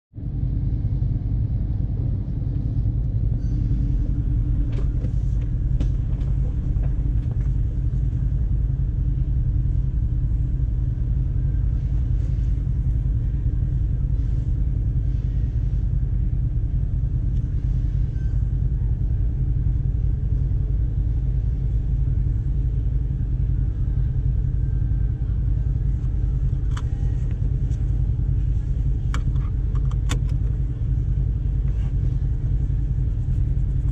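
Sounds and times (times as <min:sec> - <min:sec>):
engine running low rumble: 0:00.1 - 0:33.9.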